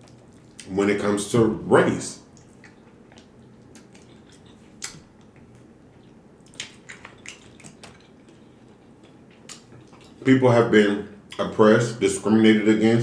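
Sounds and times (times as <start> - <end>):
wet mouth clicks and smacks: 2.3 - 10.2.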